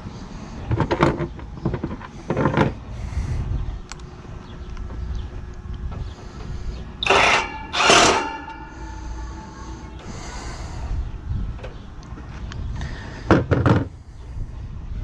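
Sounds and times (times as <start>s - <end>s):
metallic ring: 7.0s - 10.9s
metallic scrapes and clanks: 7.0s - 10.9s.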